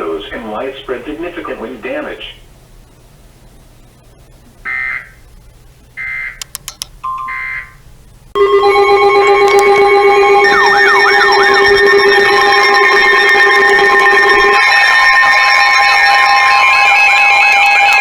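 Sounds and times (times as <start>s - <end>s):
loud electronic alert tone: 8.4s - 18.0s
short electronic data bursts: 8.4s - 18.0s.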